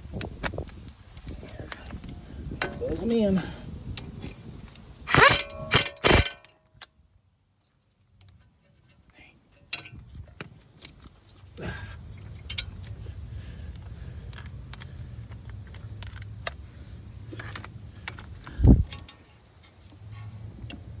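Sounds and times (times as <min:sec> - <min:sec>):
metallic clinks of hand tools: 0:05.1 - 0:06.6, 0:08.8 - 0:10.1.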